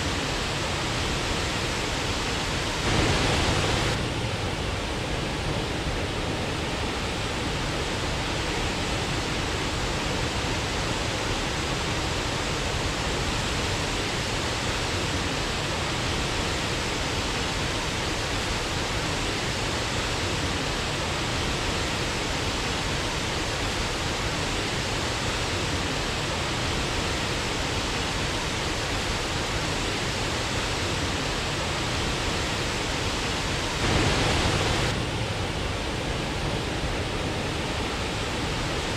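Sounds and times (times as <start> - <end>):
waterfall roaring: 0.0 - 4.1, 13.4 - 38.9.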